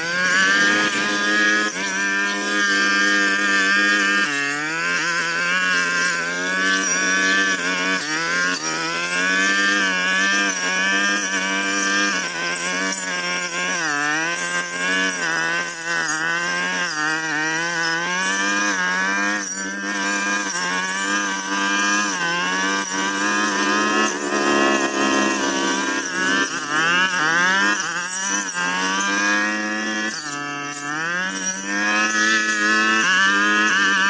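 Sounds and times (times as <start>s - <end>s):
brush cutter engine bogging: 0.0s - 34.0s.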